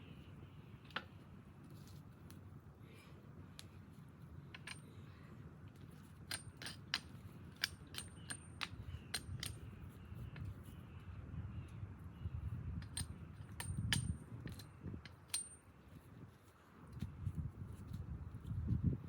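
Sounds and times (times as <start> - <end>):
light metallic clinks: 12.8 - 15.7.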